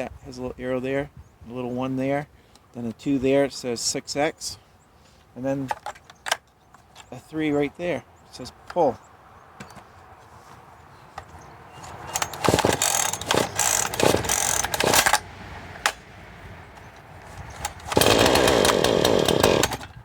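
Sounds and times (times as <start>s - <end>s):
recoil starter cord pulls: 11.9s - 15.2s, 17.3s - 20.0s
chainsaw engine running loudly: 12.4s - 15.0s, 17.9s - 19.8s.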